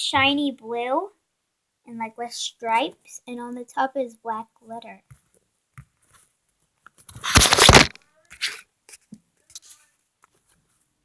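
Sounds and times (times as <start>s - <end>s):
plastic packaging crinkling and tearing: 7.1s - 8.6s.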